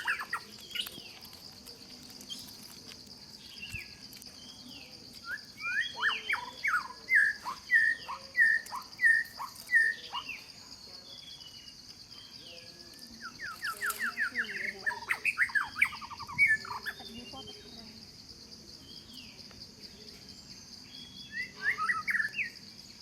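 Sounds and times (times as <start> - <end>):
bird whistling song: 0.0 - 1.1, 3.4 - 10.5, 12.6 - 17.6, 20.8 - 22.7
insects buzzing: 0.0 - 23.0.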